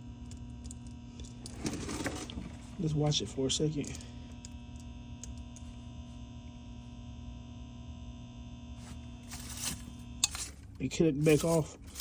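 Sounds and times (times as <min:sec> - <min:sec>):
refrigerator compressor humming: 0:00.0 - 0:12.0.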